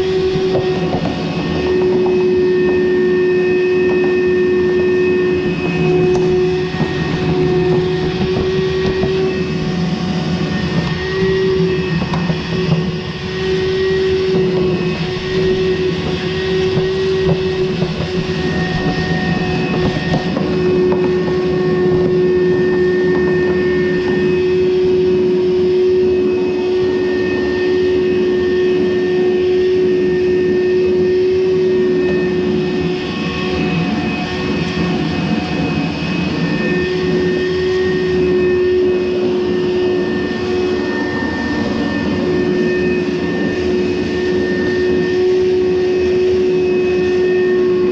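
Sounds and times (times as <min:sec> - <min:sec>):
clothes dryer running: 0:00.0 - 0:24.9.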